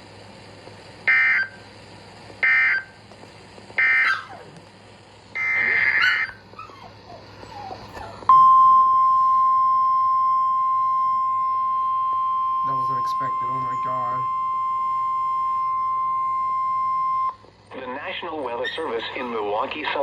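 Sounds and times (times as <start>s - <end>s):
steady warning alarm tone: 1.1s - 1.6s, 2.4s - 3.0s, 3.8s - 4.3s, 5.4s - 6.4s, 8.3s - 17.4s
screechy digital data chirps: 5.4s - 6.4s, 12.6s - 14.3s.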